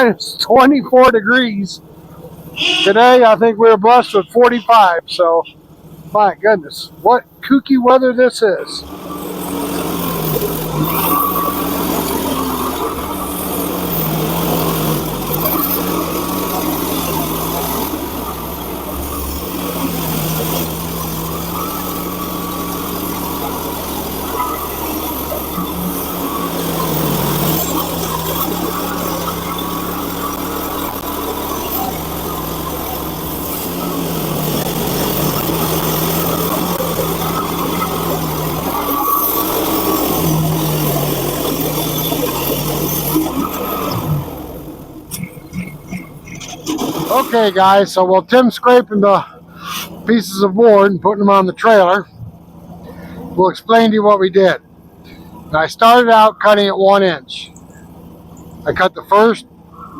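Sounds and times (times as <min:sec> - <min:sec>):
small gasoline engine running: 0:00.0 - 0:59.9
band saw blade sawing log: 0:02.6 - 0:05.4, 0:07.8 - 0:47.8.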